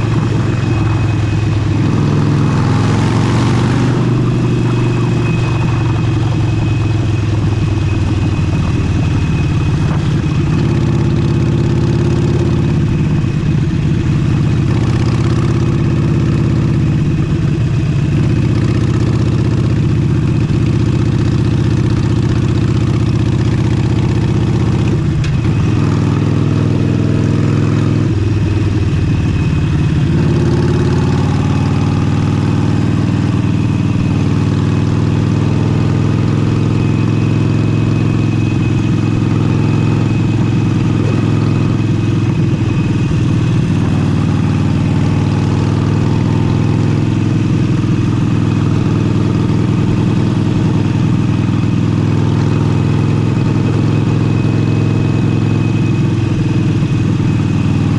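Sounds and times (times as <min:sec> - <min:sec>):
motorcycle engine running: 0:00.0 - 0:57.9.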